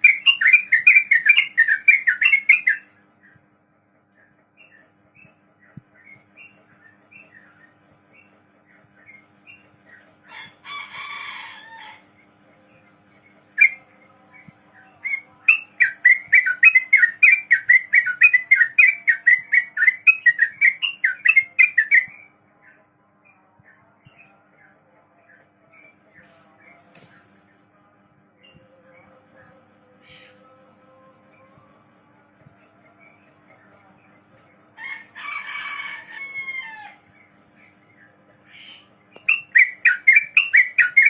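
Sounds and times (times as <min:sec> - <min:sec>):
bulbul singing: 0:00.0 - 0:02.9, 0:13.6 - 0:22.3, 0:38.5 - 0:41.0.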